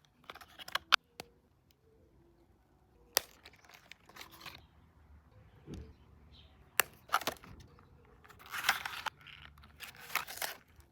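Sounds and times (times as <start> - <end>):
packaging sharp clicks: 0.0 - 1.0, 6.8 - 10.9
paper or plastic rustling: 7.1 - 10.9.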